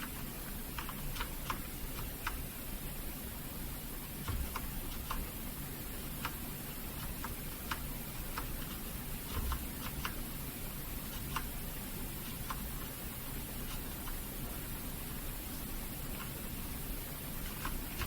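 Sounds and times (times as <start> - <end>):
mechanical keyboard clicks: 0.0 - 2.4, 4.2 - 5.3, 6.1 - 10.2, 11.1 - 11.5, 17.4 - 18.0.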